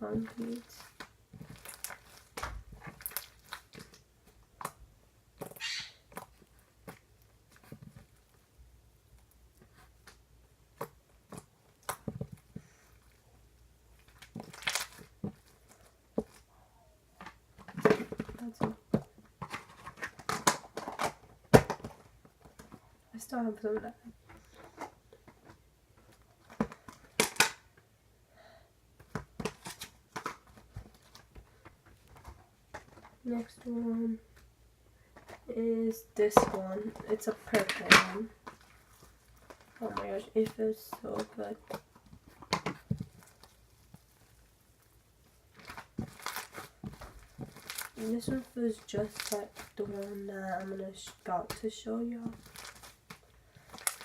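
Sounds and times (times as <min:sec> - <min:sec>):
foam bead slime crackling: 0:00.0 - 0:04.8, 0:13.9 - 0:16.5, 0:35.8 - 0:54.0.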